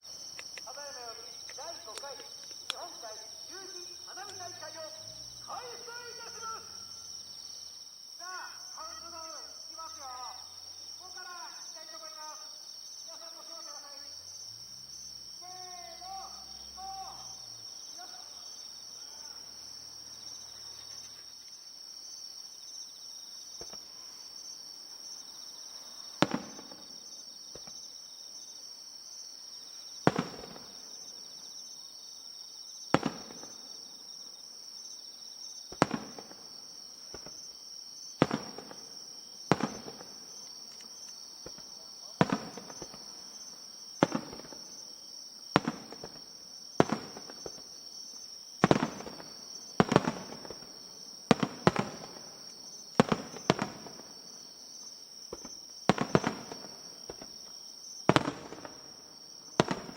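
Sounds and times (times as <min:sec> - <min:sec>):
firework shells bursting: 0:00.0 - 0:04.9, 0:23.6 - 0:24.0, 0:26.2 - 0:28.0, 0:30.0 - 0:31.5, 0:32.9 - 0:34.1, 0:35.6 - 0:59.9
insects chirping: 0:00.0 - 0:59.9.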